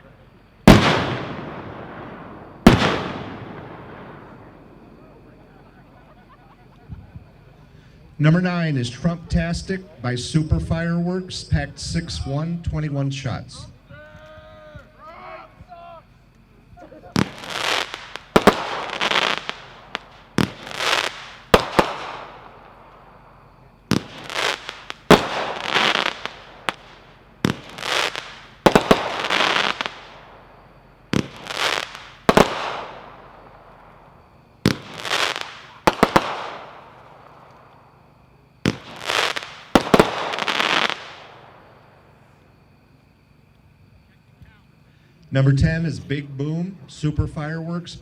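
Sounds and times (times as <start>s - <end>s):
firework reports: 0.0s - 42.8s, 44.0s - 48.0s
firework hissing: 16.8s - 42.3s.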